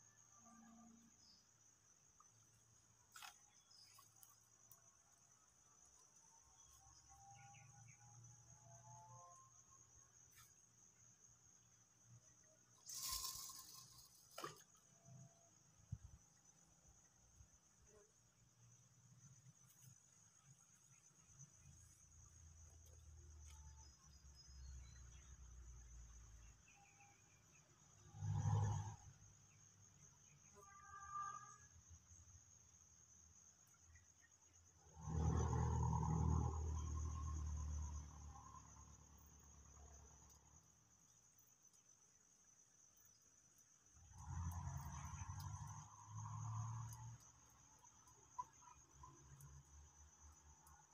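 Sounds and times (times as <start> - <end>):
insect chirring: 0.0 - 50.9
high-pitched insect drone: 12.8 - 15.3.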